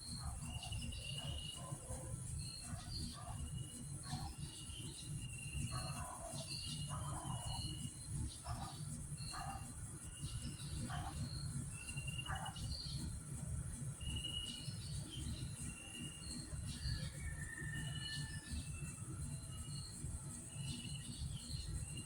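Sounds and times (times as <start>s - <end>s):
birds chirping: 0.0s - 13.2s
insect drone: 0.0s - 22.0s.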